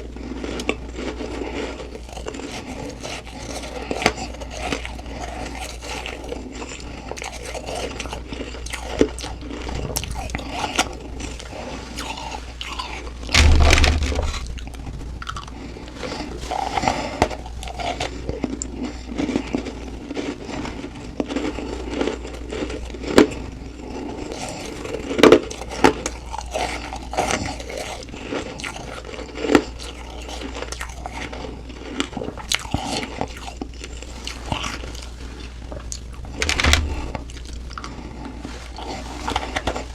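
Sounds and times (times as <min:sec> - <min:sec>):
ice being chewed: 0:00.0 - 0:39.9
loud low thump: 0:13.3 - 0:14.5.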